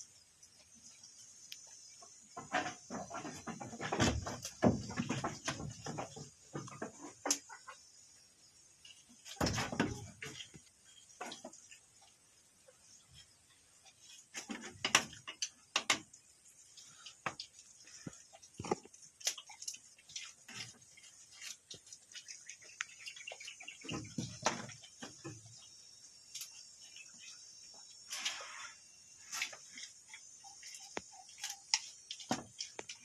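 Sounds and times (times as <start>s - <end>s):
goats rustling and snapping: 1.5s - 7.8s, 16.8s - 25.6s, 29.2s - 33.0s.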